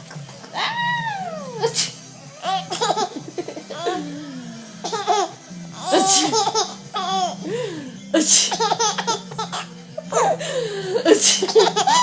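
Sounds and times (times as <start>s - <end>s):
baby laughing: 2.4s - 4.1s, 4.8s - 7.4s, 8.2s - 10.4s, 11.1s - 12.0s
breathy bursts: 7.3s - 8.5s, 10.1s - 12.0s.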